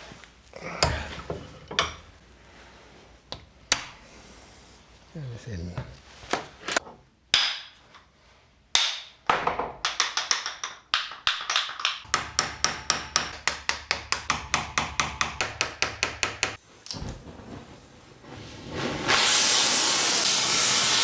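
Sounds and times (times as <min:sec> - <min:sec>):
hammer striking metal joint: 0:09.8 - 0:16.6.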